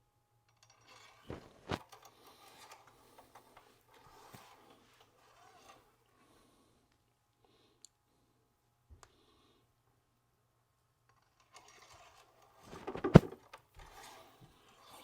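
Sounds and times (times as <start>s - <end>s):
soft rubbing and rustling: 0.9s - 6.0s, 12.6s - 15.0s.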